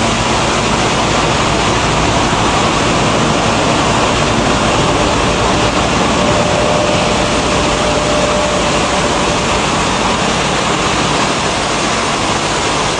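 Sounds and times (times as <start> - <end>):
milling machinery running: 0.0 - 12.9
faint thin whine: 3.1 - 12.0.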